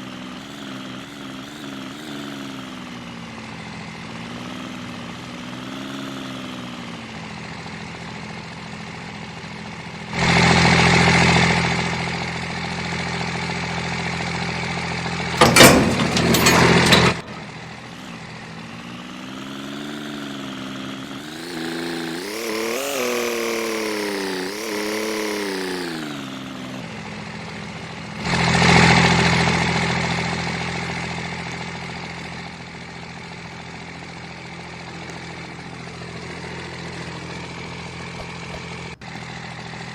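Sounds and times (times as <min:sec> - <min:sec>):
vehicle engine running: 0:00.0 - 0:39.9
sharp clatter: 0:15.4 - 0:18.1.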